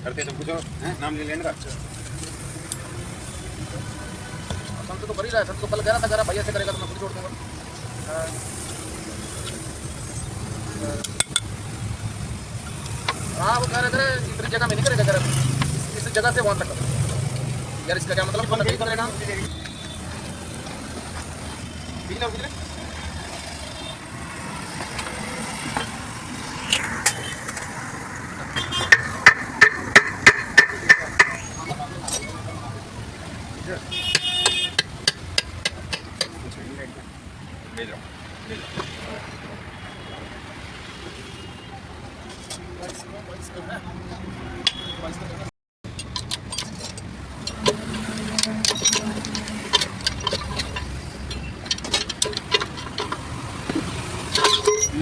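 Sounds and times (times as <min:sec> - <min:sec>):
workshop background noise: 0:00.0 - 0:55.0
metallic clinks of tools: 0:45.9 - 0:53.3, 0:54.3 - 0:55.0.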